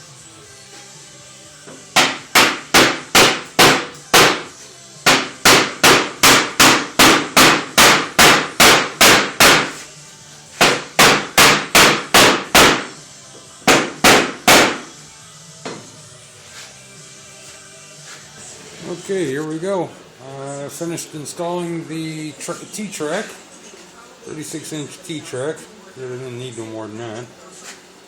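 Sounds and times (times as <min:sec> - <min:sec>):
hammer striking: 0:01.7 - 0:04.5, 0:05.1 - 0:09.8, 0:10.6 - 0:13.0, 0:13.7 - 0:14.9.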